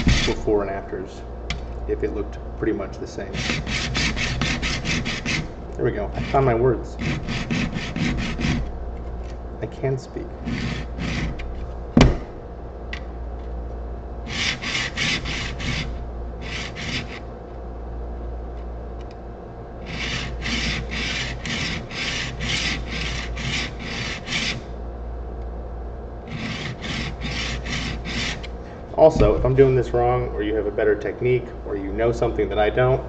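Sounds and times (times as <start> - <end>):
blade rasping on sharpening stone: 19.8 - 24.6.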